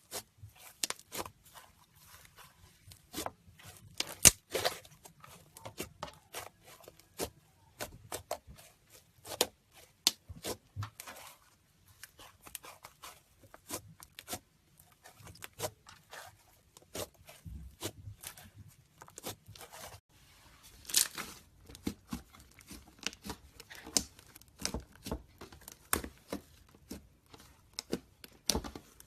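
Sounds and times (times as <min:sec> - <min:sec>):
sticky slime clicks and crackles: 0:22.7 - 0:24.8.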